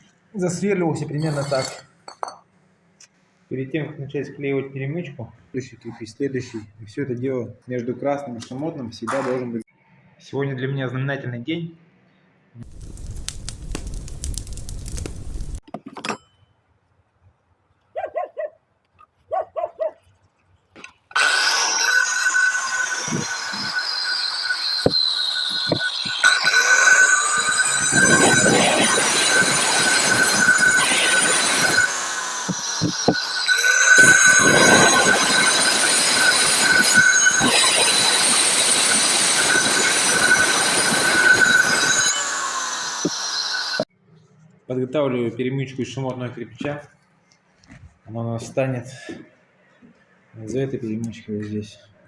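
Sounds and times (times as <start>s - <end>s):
small dog yapping: 17.9s - 18.6s, 19.3s - 20.0s
power tool whining: 21.1s - 43.9s.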